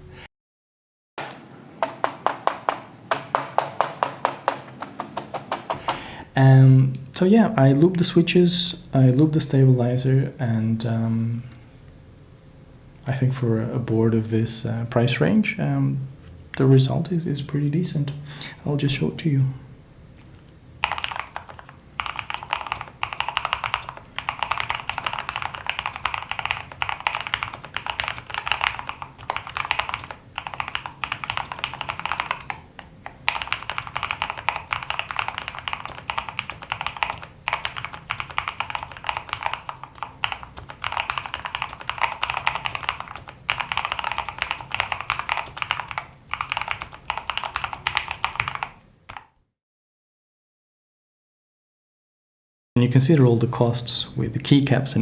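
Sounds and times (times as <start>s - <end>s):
fast typing on mechanical keyboard: 1.9s - 6.1s, 20.8s - 49.4s.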